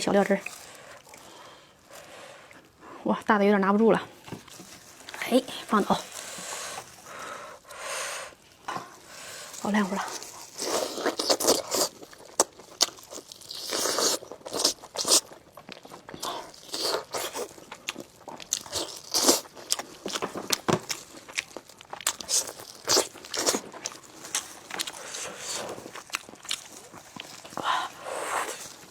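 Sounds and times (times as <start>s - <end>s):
biting and chewing meat: 5.9s - 28.9s.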